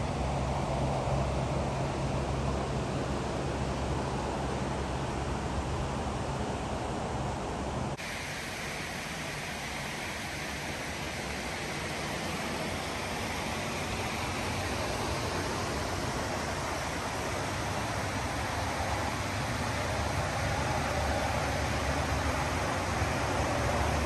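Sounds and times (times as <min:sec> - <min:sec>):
waterfall rushing: 0:08.0 - 0:24.0.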